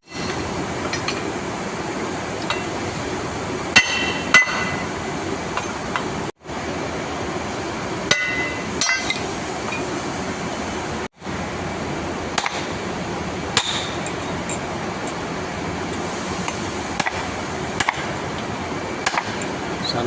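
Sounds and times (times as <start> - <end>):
hammer striking metal: 3.8 - 4.9, 8.1 - 9.2, 12.4 - 12.7, 13.6 - 14.6, 17.8 - 18.2, 19.0 - 19.5.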